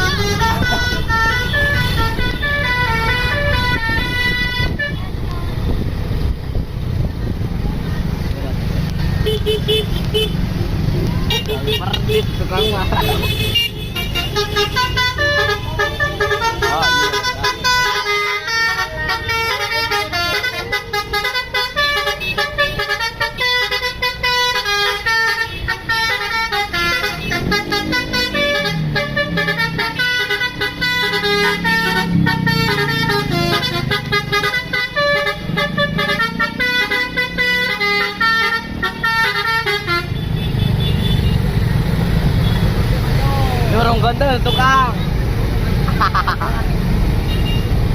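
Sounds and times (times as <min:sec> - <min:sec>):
musical bus horn playing tune: 0:00.0 - 0:05.2, 0:11.3 - 0:41.3.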